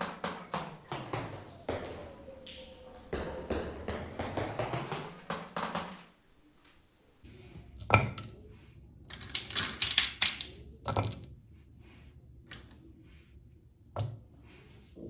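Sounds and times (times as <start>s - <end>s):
marbles clacking down a marble run: 9.2s - 11.2s.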